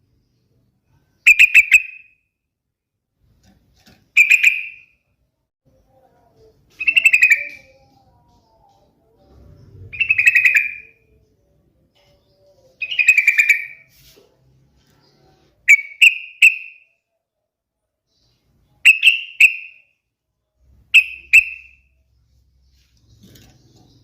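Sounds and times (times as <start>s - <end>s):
bulbul singing: 1.2s - 2.3s, 4.1s - 5.1s, 6.7s - 13.9s, 15.0s - 17.1s, 18.1s - 20.1s, 20.7s - 24.0s.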